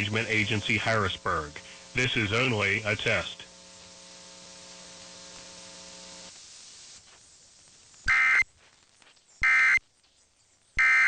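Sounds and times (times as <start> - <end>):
steady low hum: 0.0 - 11.0
digital data buzzes: 8.0 - 8.5, 9.3 - 9.8, 10.8 - 11.0.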